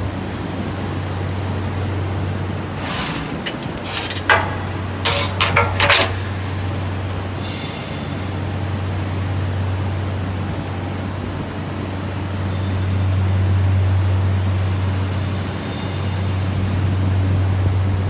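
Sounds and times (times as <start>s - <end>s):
metallic clattering and scraping: 2.6s - 7.0s.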